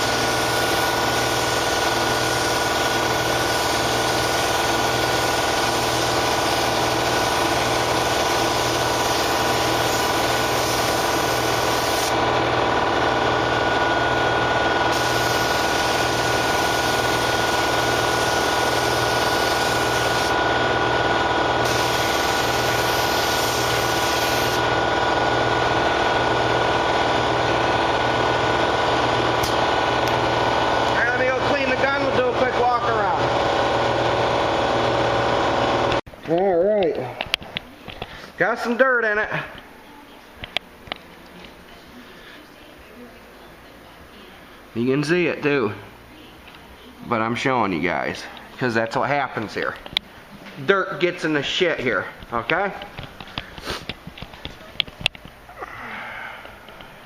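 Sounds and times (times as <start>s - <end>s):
spray gun hissing: 0.0s - 12.2s, 14.8s - 20.4s, 21.6s - 24.7s
air compressor running: 0.0s - 36.0s, 51.5s - 57.0s.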